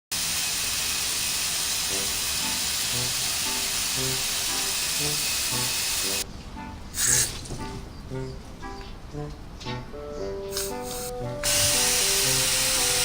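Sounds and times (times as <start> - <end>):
garden hose spraying water: 0.1 - 6.2, 7.0 - 7.6, 10.5 - 13.0
simple melody: 1.9 - 13.0.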